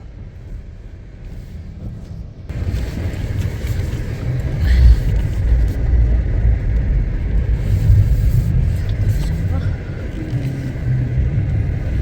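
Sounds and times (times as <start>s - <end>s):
car engine and tyres rumbling: 0.0s - 12.0s.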